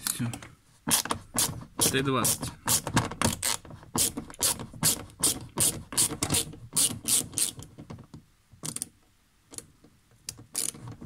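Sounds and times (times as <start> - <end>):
socket ratchet clicking: 2.7 - 7.7.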